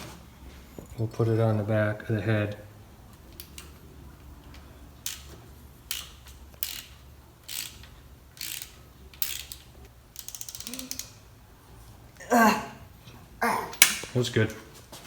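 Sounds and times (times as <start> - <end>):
ratchet wrench clicking: 3.3 - 3.8, 4.5 - 11.2.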